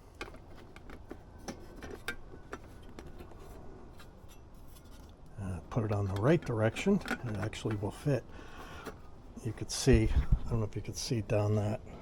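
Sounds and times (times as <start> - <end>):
clicks and taps of parts handled: 5.8 - 7.9.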